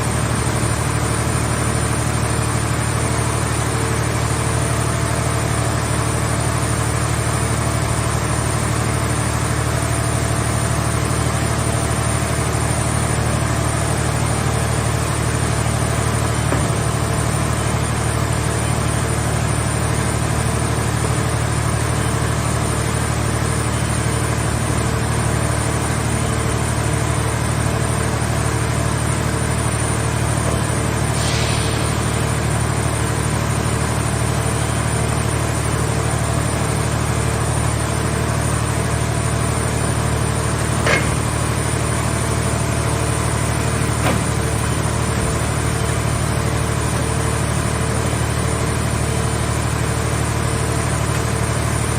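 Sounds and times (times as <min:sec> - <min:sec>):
baler engine running: 0:00.0 - 0:51.9
short hiss: 0:31.2 - 0:32.0
sharp click or knock: 0:40.8 - 0:41.3.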